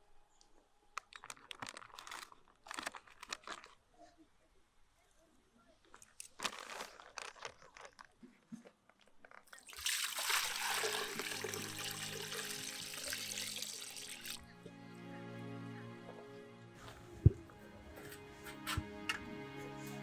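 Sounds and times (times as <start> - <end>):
clicks and rustles of handling: 1.0 - 4.2, 5.8 - 9.6
water running: 9.5 - 14.4
background music: 10.3 - 20.0.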